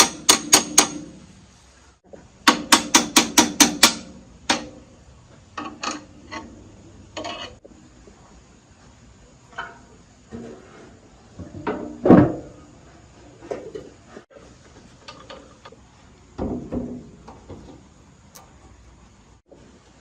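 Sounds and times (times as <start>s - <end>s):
hard parts knocking and clunking: 0.0s - 1.2s, 2.1s - 7.6s, 11.3s - 12.6s, 13.4s - 18.0s.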